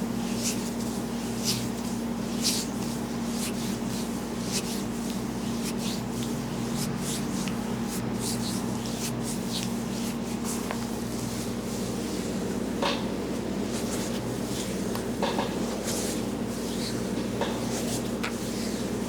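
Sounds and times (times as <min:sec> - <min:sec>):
hands rubbing hair: 0:00.2 - 0:12.2.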